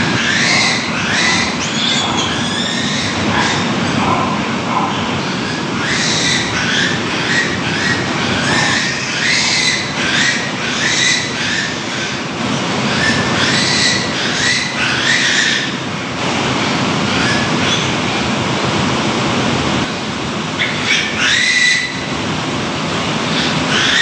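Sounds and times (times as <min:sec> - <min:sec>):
piglets squealing: 0:00.0 - 0:12.2, 0:12.9 - 0:15.8, 0:17.1 - 0:18.0, 0:20.6 - 0:22.1, 0:23.3 - 0:24.0
steady hissing background: 0:00.0 - 0:24.0.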